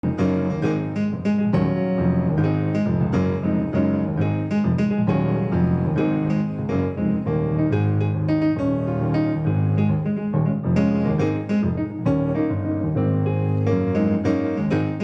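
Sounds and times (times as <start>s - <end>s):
piano music: 0.0s - 15.0s.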